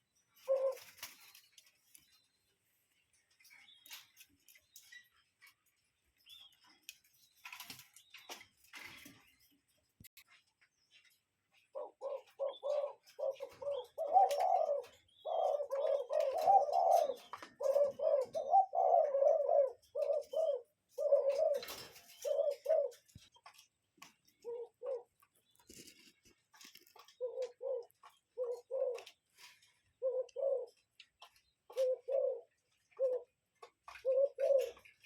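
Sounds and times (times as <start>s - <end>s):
bird hooting: 0.4s - 0.9s, 11.7s - 23.0s, 24.4s - 25.1s, 27.2s - 29.0s, 30.0s - 30.8s, 31.7s - 33.3s, 34.0s - 34.8s.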